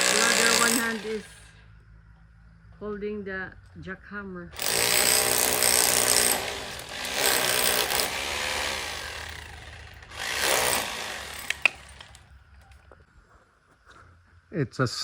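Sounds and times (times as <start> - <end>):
jackhammer chiselling into wall: 0.0 - 1.5, 4.6 - 12.3.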